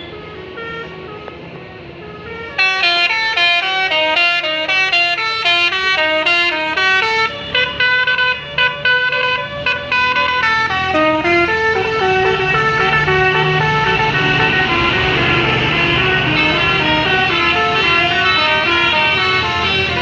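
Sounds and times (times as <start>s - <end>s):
musical bus horn tune: 0.0s - 20.0s
low engine hum: 9.6s - 20.0s.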